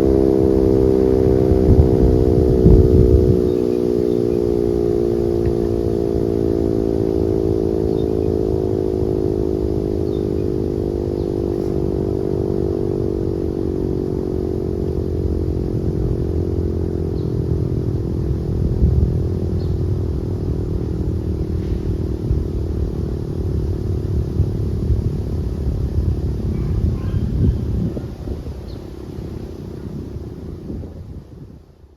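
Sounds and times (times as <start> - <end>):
siren winding down: 0.0 - 20.0
steady low rumbling: 0.0 - 31.9.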